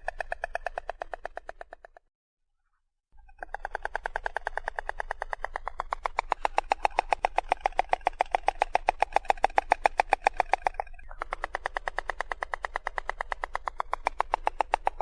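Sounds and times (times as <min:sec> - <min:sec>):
stork clattering bill: 0:03.6 - 0:15.0.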